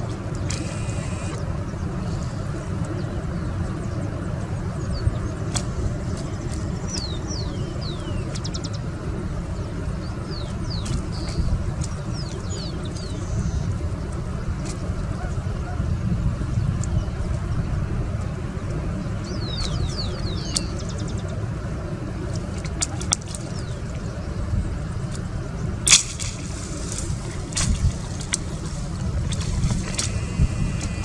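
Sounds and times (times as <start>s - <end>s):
birds chirping: 0.0s - 4.0s, 4.6s - 8.9s, 9.5s - 14.1s, 19.0s - 21.4s, 26.3s - 31.0s
low rumble: 8.9s - 31.0s.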